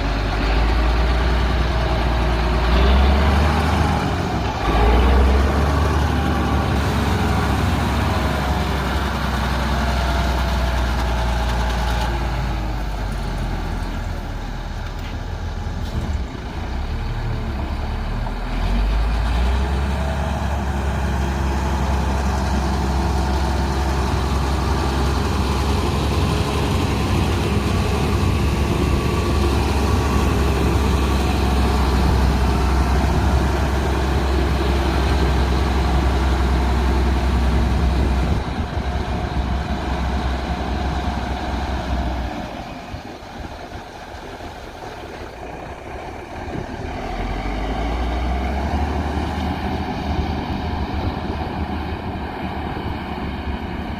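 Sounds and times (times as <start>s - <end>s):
heavy diesel engine droning: 0.0s - 53.9s.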